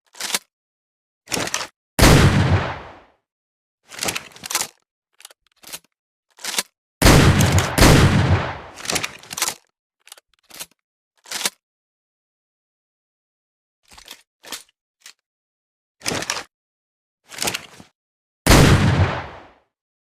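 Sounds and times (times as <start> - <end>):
shotgun shots: 2.0 - 3.0, 7.0 - 9.0, 18.5 - 19.5
gun handling clicks: 7.3 - 11.6.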